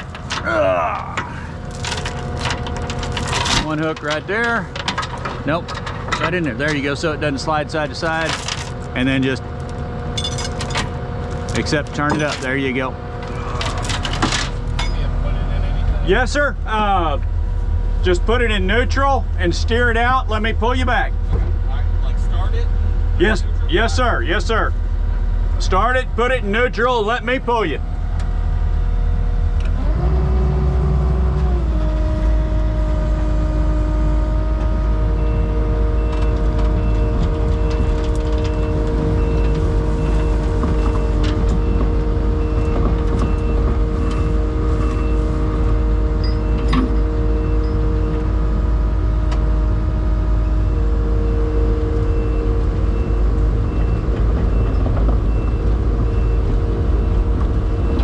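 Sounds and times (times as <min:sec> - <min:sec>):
diesel engine revving: 0:00.0 - 0:58.0
backup alarm beeping: 0:35.1 - 0:48.3, 0:50.4 - 0:58.0.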